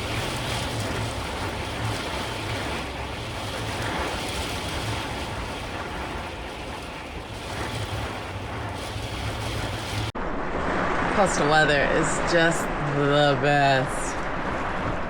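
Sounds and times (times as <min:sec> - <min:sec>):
motorcycle engine hum: 0:00.0 - 0:10.4
wind rushing over microphone: 0:00.0 - 0:15.0.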